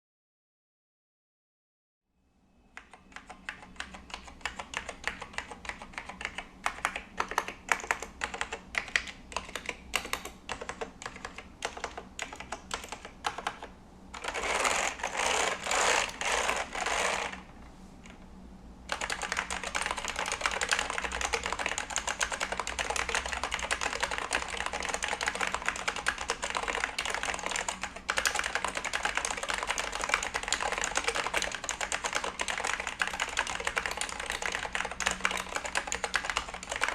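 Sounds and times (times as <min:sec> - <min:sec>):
typing on keyboard: 0:02.8 - 0:17.2, 0:18.9 - 0:36.9.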